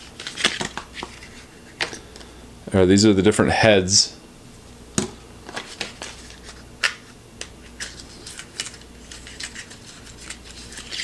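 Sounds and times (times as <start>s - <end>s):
plastic packaging handled: 5.4s - 11.0s.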